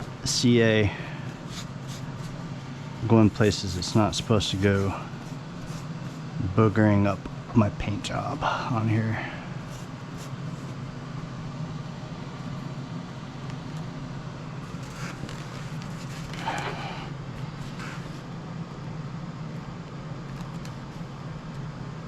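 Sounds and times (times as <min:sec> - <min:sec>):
faint handling rustles: 0:00.0 - 0:06.4, 0:14.6 - 0:18.3
low background hum: 0:00.0 - 0:22.0.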